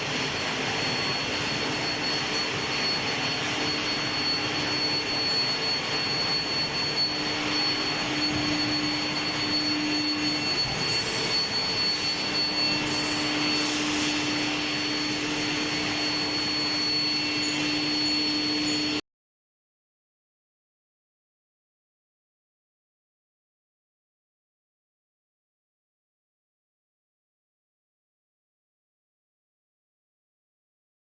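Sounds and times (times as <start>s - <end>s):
high-pitched whine: 0.0s - 19.0s.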